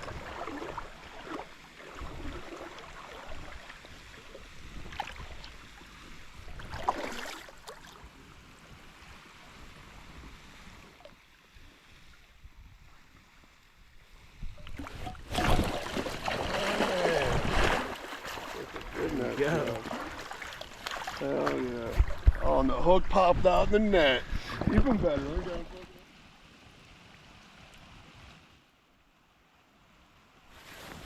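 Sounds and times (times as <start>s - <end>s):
creek water rushing: 0.0s - 11.0s, 14.7s - 28.4s.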